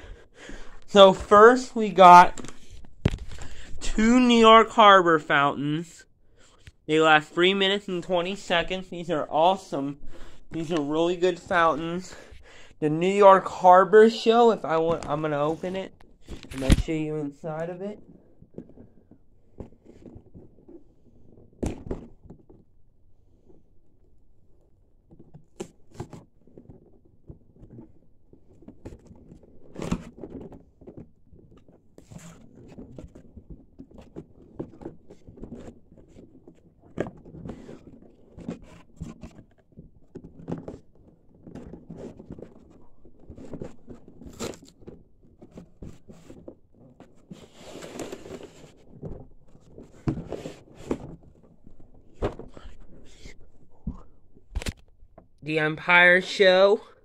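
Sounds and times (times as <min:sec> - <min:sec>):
cardboard box being handled: 0:25.1 - 0:54.0
cardboard tearing or rustling: 0:29.0 - 0:53.2.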